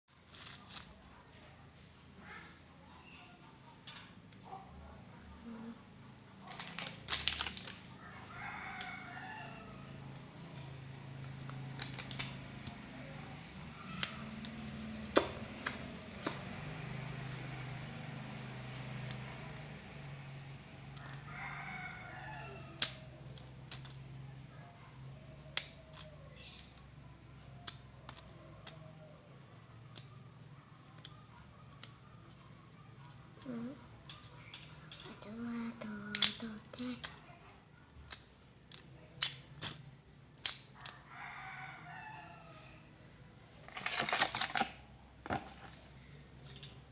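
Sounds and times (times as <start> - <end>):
rooster crowing: 8.0 - 10.7, 21.0 - 23.1, 40.8 - 42.9.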